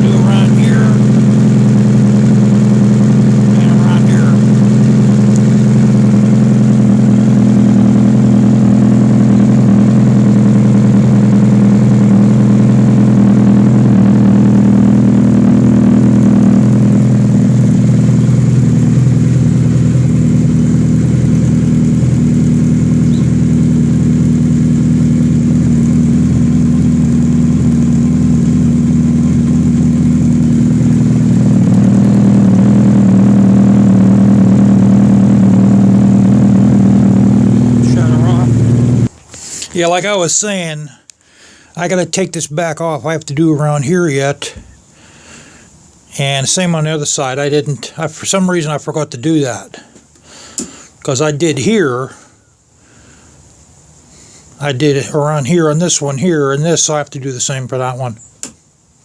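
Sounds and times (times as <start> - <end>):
machine drone with low hum: 0.0 - 39.2.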